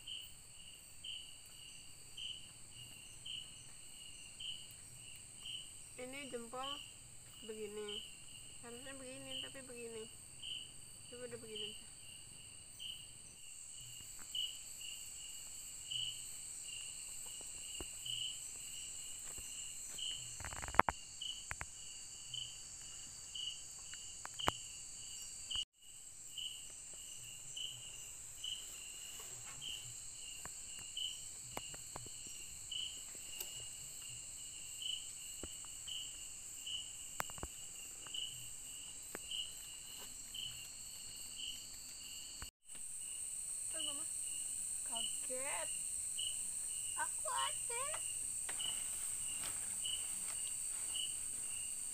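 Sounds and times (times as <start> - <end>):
cricket chirping: 0.0 - 51.9
high-pitched insect drone: 24.2 - 51.9.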